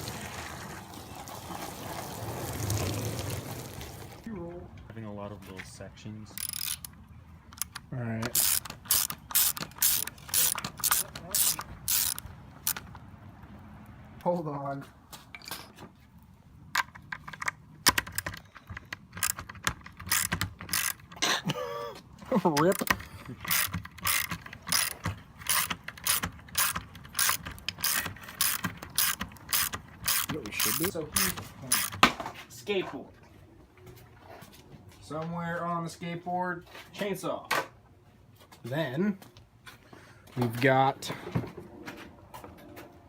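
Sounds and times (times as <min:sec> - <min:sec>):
hand tool rasping strokes: 0:08.3 - 0:12.2, 0:22.5 - 0:32.0.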